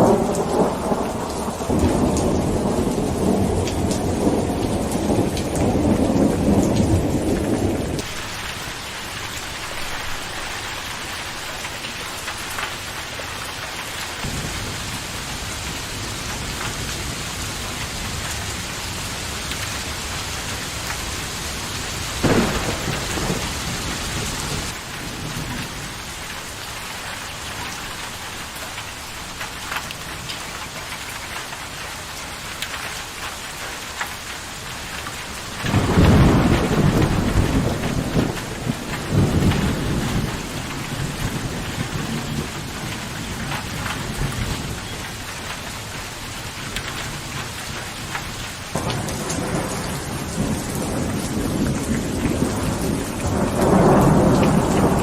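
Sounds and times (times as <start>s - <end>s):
low rumble of thunder: 0.0s - 8.4s, 14.2s - 18.6s, 22.0s - 26.2s, 35.6s - 45.3s, 46.5s - 55.0s
steady rain: 0.0s - 55.0s.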